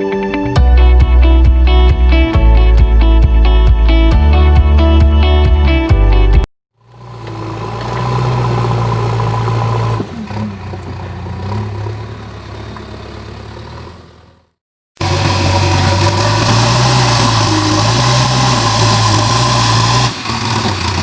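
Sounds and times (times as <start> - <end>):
diesel engine running: 6.8 - 21.0.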